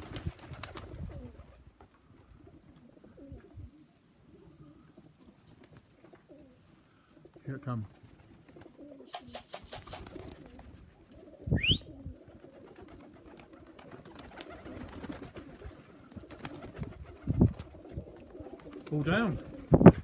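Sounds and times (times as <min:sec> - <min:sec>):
pigeons cooing: 0:00.0 - 0:20.0
quick run of clicks: 0:09.1 - 0:10.2.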